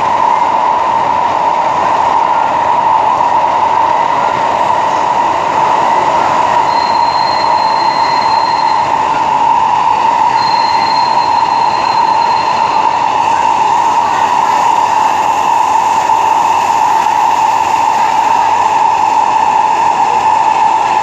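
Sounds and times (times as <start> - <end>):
metro train rolling noise: 0.0 - 21.0
faint thin high tone: 6.7 - 8.8, 10.4 - 12.9.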